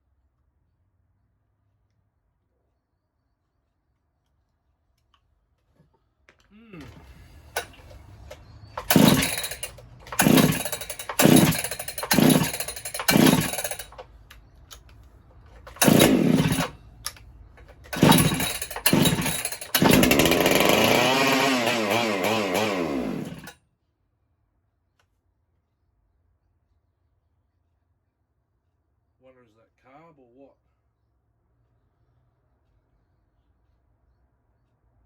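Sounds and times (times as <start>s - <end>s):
chainsaw pull-starting: 6.8s - 14.1s, 15.6s - 23.6s
chainsaw running unsteadily: 8.8s - 14.0s, 15.7s - 16.8s, 17.9s - 23.6s.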